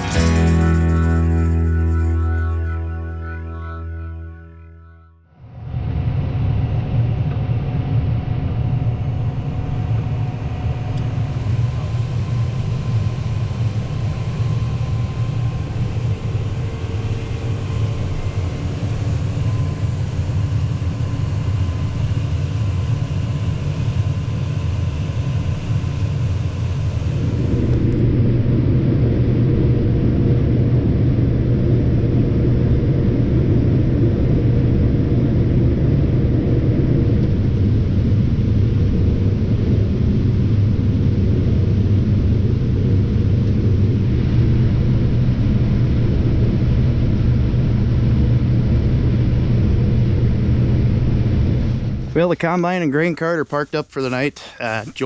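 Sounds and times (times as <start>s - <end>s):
diesel farm machinery running: 0.0s - 5.0s.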